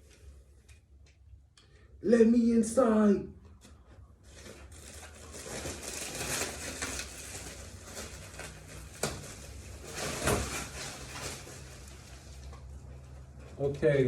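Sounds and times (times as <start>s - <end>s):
rustling and rattling: 3.8s - 13.6s.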